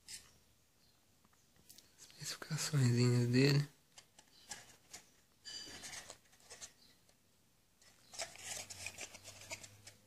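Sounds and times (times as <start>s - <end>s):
packaging rustling: 7.8s - 10.0s.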